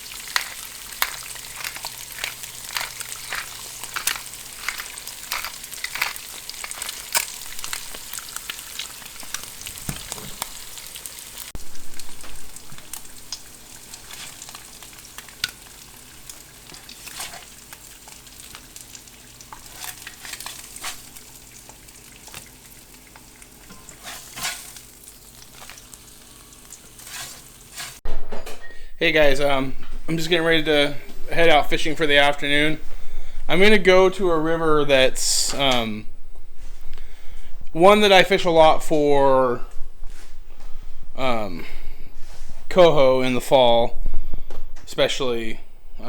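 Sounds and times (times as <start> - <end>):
sizzling crackle with sharp pops: 0.0 - 28.0.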